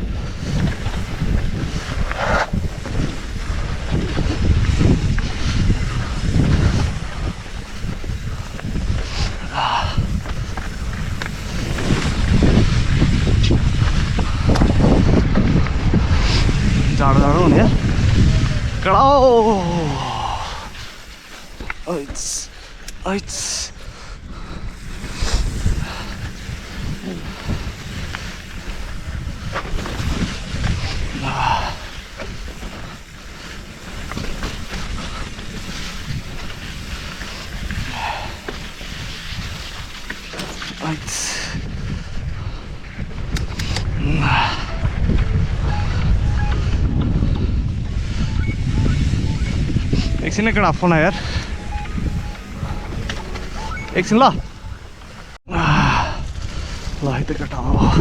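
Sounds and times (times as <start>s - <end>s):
bike clicks and rattles: 0.0s - 17.0s, 19.8s - 44.0s
wind buffeting microphone: 0.0s - 58.0s
bike knocking and rattling: 23.8s - 43.9s.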